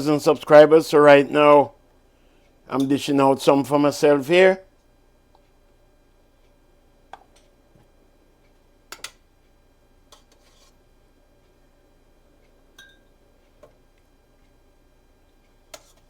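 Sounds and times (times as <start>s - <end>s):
utensils and dishes clinking: 12.8s - 13.1s.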